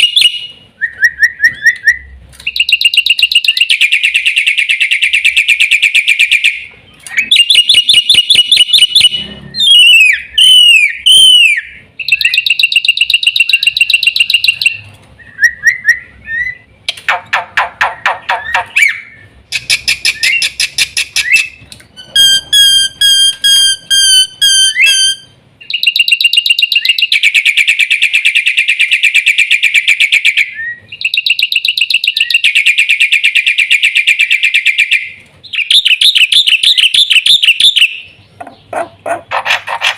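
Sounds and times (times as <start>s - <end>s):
starling singing: 2.5s - 16.8s, 17.8s - 29.1s.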